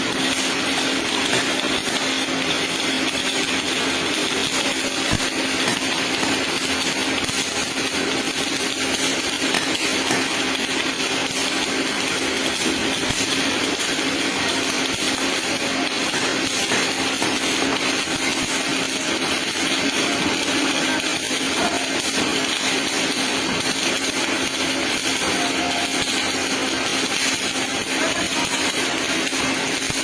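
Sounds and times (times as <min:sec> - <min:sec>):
welding arc crackling hiss: 0:00.0 - 0:30.0.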